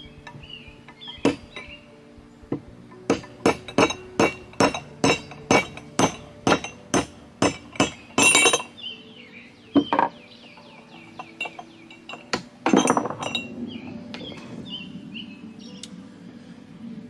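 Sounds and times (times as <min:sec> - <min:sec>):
mallet hitting metal bolt: 0:01.2 - 0:01.8, 0:03.0 - 0:08.7.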